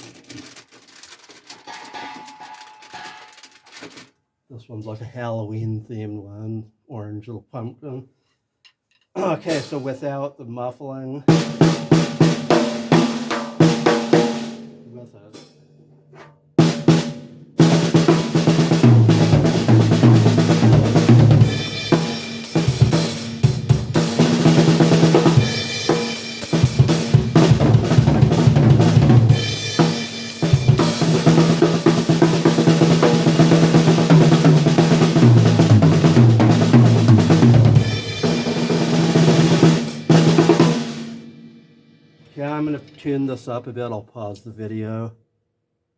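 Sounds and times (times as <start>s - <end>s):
snare drum grooves and fills: 9.2s - 10.2s, 11.3s - 15.5s, 16.2s - 41.6s
bass drum: 17.6s - 40.8s.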